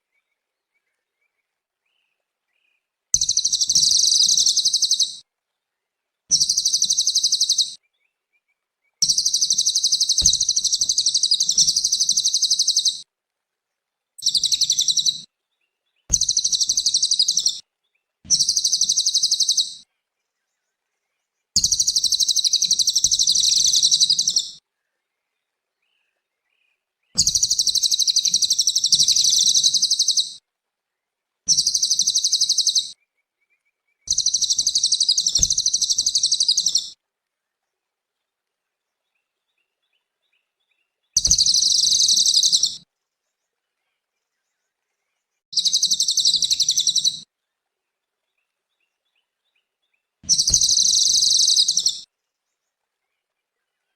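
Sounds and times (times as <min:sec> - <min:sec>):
songbird chattering trill: 0:03.2 - 0:05.2, 0:06.3 - 0:07.8, 0:09.0 - 0:13.0, 0:14.2 - 0:15.2, 0:16.1 - 0:17.6, 0:18.3 - 0:19.8, 0:21.6 - 0:24.6, 0:27.2 - 0:30.4, 0:31.5 - 0:32.9, 0:34.1 - 0:36.9, 0:41.2 - 0:42.8, 0:45.6 - 0:47.2, 0:50.3 - 0:52.0.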